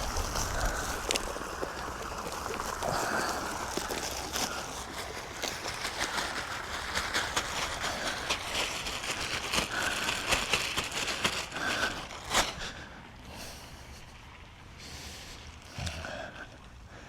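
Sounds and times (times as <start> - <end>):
crackling and rustling: 0.0 - 17.0.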